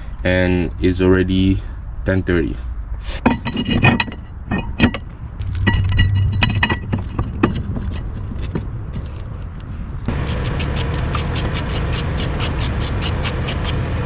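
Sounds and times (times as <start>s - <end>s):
low hum: 0.0s - 12.8s
metal parts clinking: 3.2s - 9.5s.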